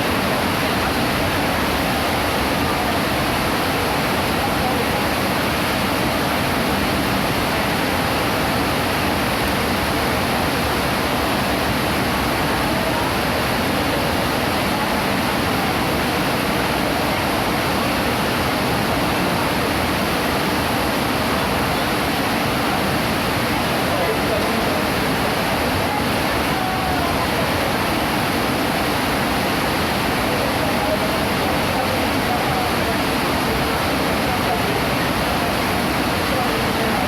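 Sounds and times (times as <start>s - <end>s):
heavy rain falling: 0.0s - 37.0s.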